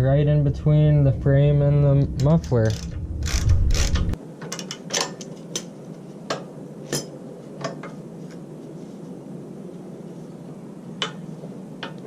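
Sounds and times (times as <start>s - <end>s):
ratchet wrench clicking: 2.2s - 4.2s.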